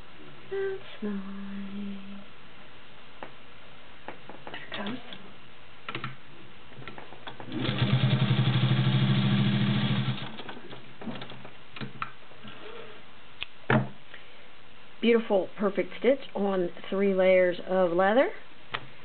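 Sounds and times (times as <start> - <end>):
motor hum: 7.4 - 10.7
sewing machine stitching: 7.5 - 10.4.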